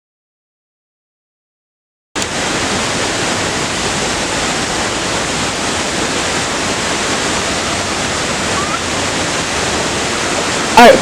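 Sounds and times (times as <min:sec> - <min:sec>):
waterfall rushing: 0:02.2 - 0:11.0.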